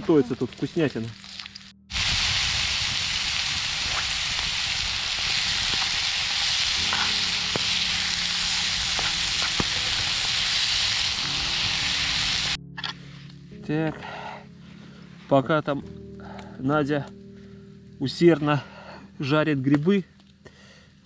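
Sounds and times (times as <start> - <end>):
mushrooms and onion sizzling in pan: 0.0 - 12.6.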